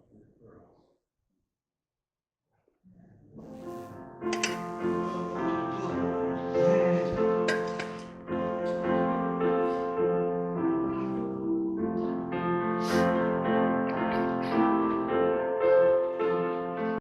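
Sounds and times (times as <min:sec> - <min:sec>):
piano playing sustained chords: 0:03.4 - 0:17.0.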